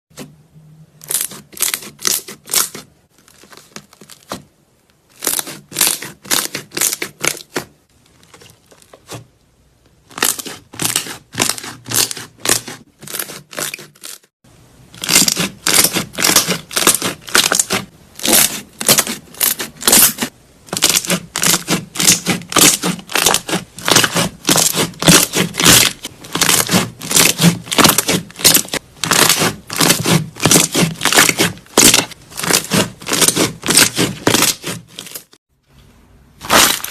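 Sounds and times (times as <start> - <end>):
slime crackling squishes: 10.0 - 14.3, 15.0 - 35.4, 36.4 - 36.9.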